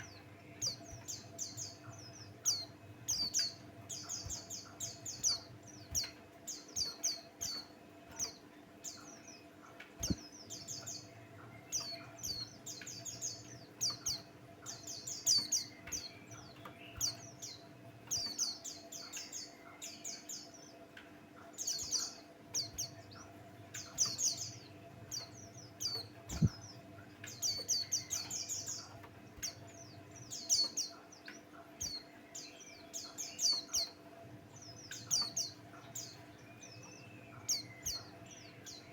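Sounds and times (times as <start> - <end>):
bird singing rapid high chirps: 0.0 - 20.6, 21.6 - 38.9
faint steady hum: 0.0 - 38.9.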